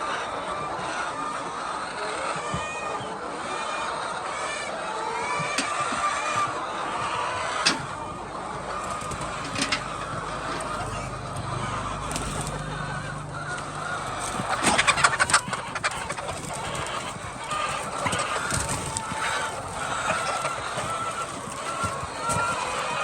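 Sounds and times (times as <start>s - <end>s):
hens clucking: 0.0s - 23.0s
sharp knocks clatter: 8.8s - 12.8s.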